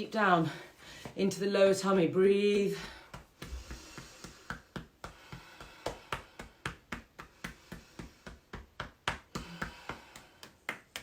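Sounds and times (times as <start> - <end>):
hands patting the body: 2.4 - 11.0.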